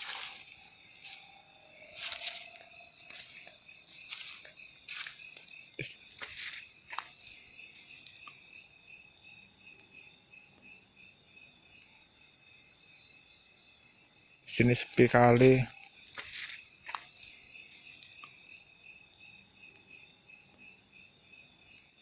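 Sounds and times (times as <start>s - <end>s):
crickets and insects trilling: 0.0s - 22.0s.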